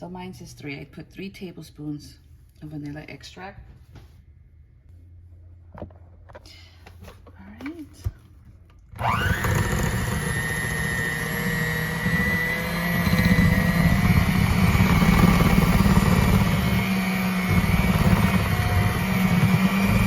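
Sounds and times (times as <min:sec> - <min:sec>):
electric mixer whining: 0:09.0 - 0:20.0.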